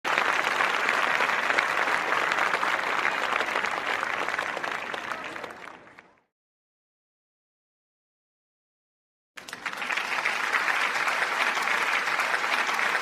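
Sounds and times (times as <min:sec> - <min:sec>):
crowd applause: 0:00.0 - 0:06.3, 0:09.4 - 0:13.0.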